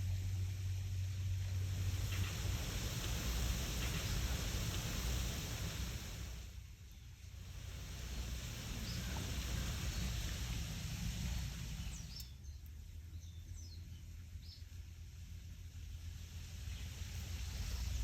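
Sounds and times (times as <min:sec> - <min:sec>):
low wind rumble: 0:00.0 - 0:18.0
wind rustling through leaves: 0:00.0 - 0:18.0.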